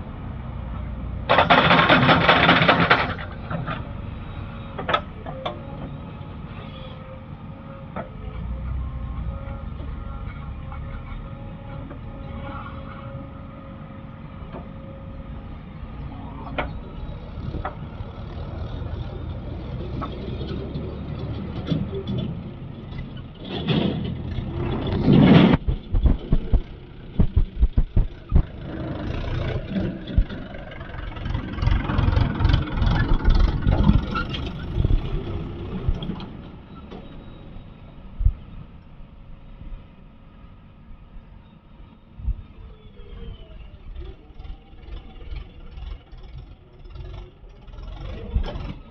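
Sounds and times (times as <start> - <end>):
diesel engine under load: 0.0 - 48.9
heavy knocks and clatters: 23.4 - 28.6.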